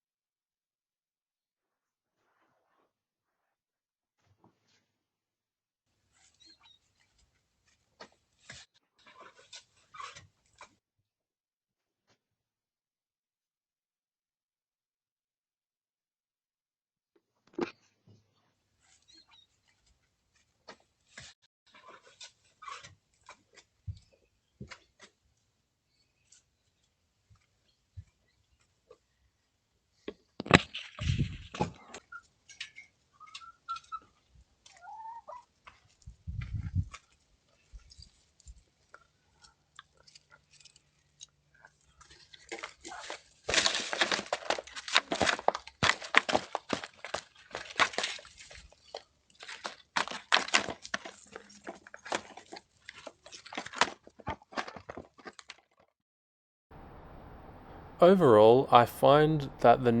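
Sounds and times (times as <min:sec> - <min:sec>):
crunching and clicking: 0:37.8 - 0:55.6
short pitched sounds: 0:56.8 - 1:00.0.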